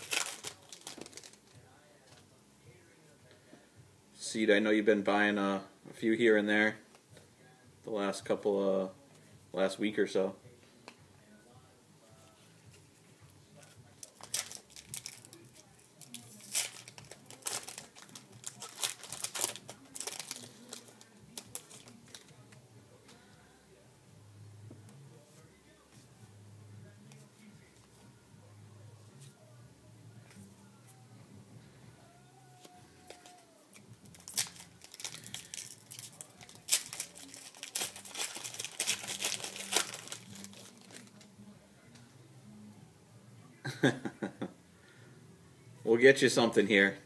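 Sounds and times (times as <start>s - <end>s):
foil wrappers and cards crinkling: 0.0s - 1.6s, 13.9s - 22.5s, 32.6s - 41.3s.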